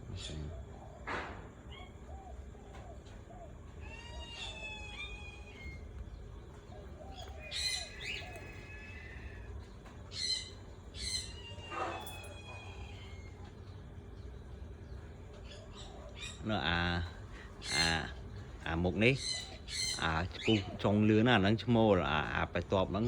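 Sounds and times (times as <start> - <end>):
parrots screeching: 3.8 - 5.9, 7.0 - 13.5, 15.4 - 18.2, 19.0 - 20.9.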